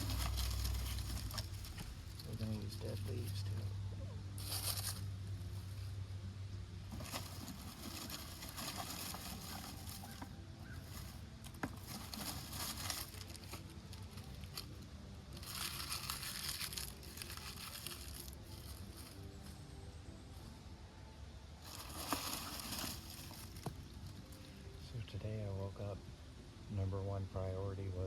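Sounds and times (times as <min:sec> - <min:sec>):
dry leaves and paper rustling: 0:00.0 - 0:06.0, 0:06.8 - 0:19.7, 0:21.6 - 0:24.8.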